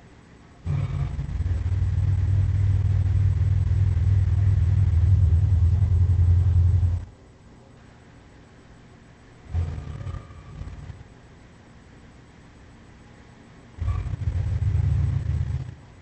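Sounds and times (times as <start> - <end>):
deep monster growl: 0.6 - 7.1, 9.5 - 11.0, 13.8 - 15.8.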